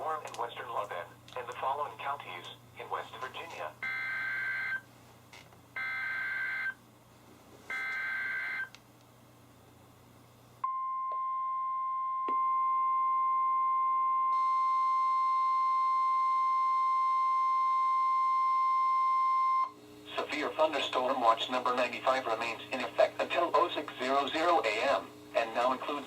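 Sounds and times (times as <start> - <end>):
steady alarm tone: 3.8 - 4.9, 5.8 - 6.8, 7.7 - 8.7, 10.7 - 19.8.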